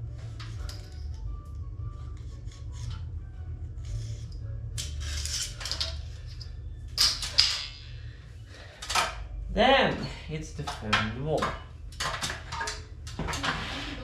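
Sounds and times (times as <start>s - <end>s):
steady low hum: 0.0s - 14.0s
hard objects clattering and scraping: 4.8s - 8.0s.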